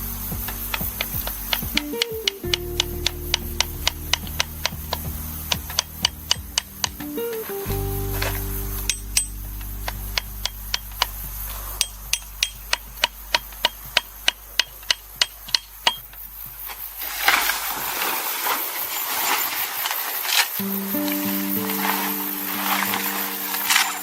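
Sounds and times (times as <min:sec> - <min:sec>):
noisy rustle: 0:00.0 - 0:24.0.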